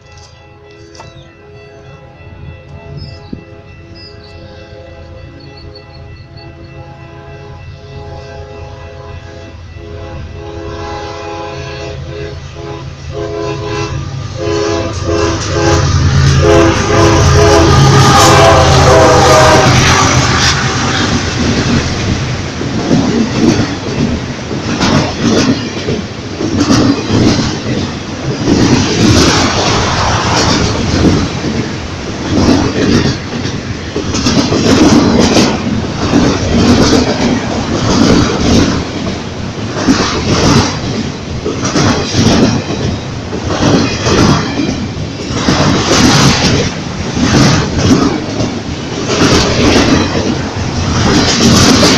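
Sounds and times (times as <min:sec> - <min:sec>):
locomotive horn blast: 0:00.1 - 0:21.8
train wheels clattering over rails: 0:13.2 - 0:51.9.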